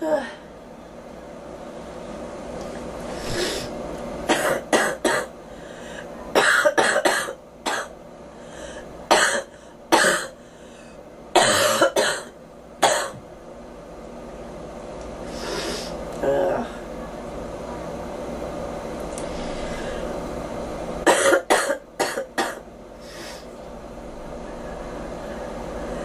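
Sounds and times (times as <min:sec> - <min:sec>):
girl coughing: 0:04.3 - 0:05.3, 0:06.4 - 0:07.9, 0:09.1 - 0:10.4, 0:11.4 - 0:13.2, 0:21.0 - 0:22.6.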